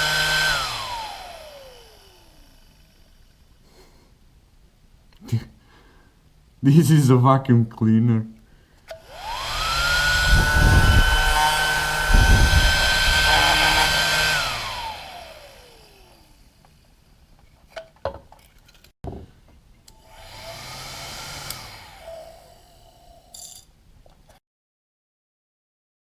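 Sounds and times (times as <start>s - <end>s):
car vacuum cleaner motor whine: 0.0s - 3.4s, 9.0s - 16.7s, 19.9s - 23.3s.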